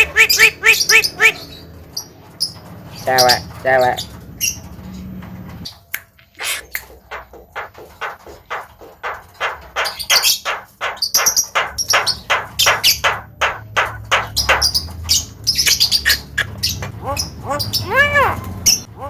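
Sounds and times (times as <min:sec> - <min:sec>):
bird sharp chirps and clicks: 0:00.0 - 0:03.4, 0:09.4 - 0:18.9.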